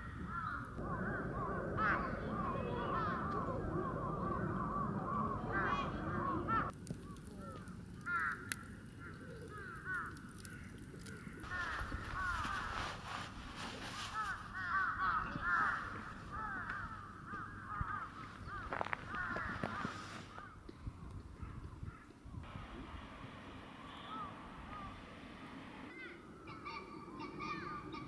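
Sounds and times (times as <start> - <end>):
birds calling: 0.0 - 13.0, 14.1 - 22.4, 23.8 - 28.0
low rumble: 0.1 - 6.8.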